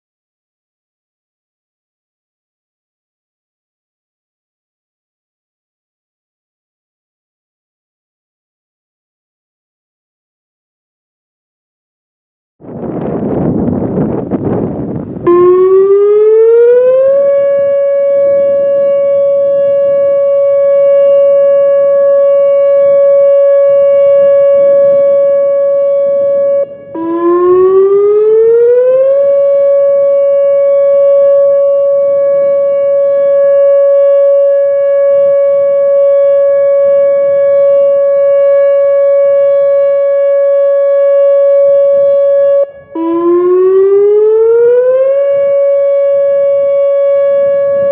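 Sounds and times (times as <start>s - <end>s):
electronic warning siren tone: 13.9s - 47.9s.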